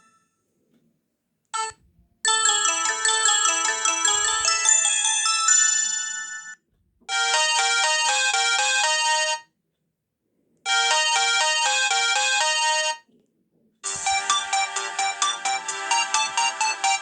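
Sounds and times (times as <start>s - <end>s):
phone ringtone chiming melody: 2.3s - 9.5s, 10.7s - 13.0s, 13.8s - 17.0s.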